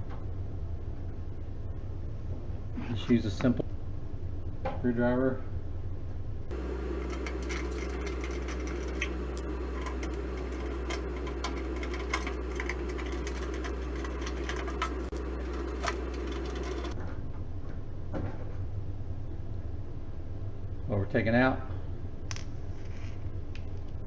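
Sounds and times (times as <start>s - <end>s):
steady hum: 5.9s - 17.0s
screwdriver clicking on sheet metal: 6.5s - 17.0s.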